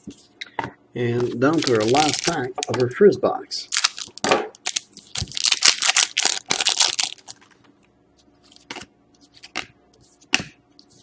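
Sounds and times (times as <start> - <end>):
cards rustling: 1.2 - 2.9, 3.7 - 7.6
foil wrapper tearing and crinkling: 1.5 - 2.7, 3.7 - 7.4.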